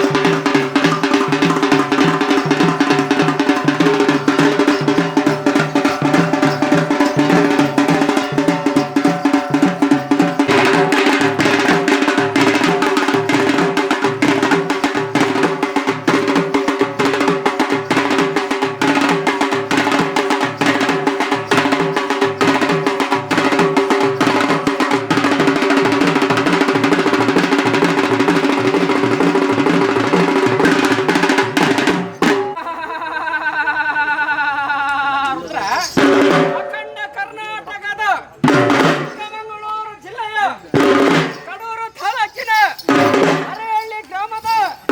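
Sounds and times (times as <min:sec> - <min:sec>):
rapid dense drumming: 0:00.0 - 0:34.3, 0:35.9 - 0:36.9, 0:38.4 - 0:39.2, 0:40.7 - 0:44.9
steady held tones: 0:28.3 - 0:38.5
person speaking: 0:41.4 - 0:44.9.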